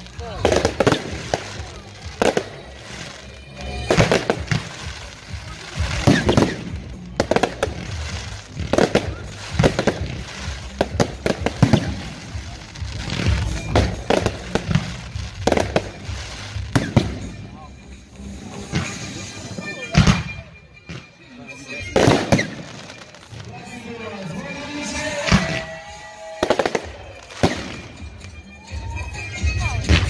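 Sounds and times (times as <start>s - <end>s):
fireworks bursting: 0.0s - 30.0s
music playing: 0.0s - 30.0s.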